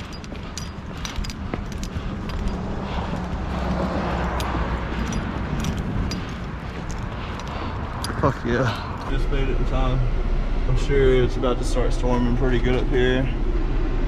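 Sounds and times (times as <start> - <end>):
wind buffeting microphone: 0.0 - 9.7.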